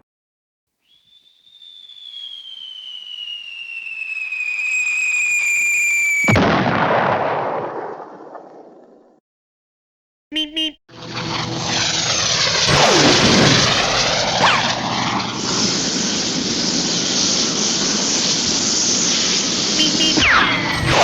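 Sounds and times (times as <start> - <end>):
descending cartoon whistle: 0.9 - 6.4, 19.8 - 21.0
loud explosive boom: 6.1 - 8.2, 11.3 - 21.0.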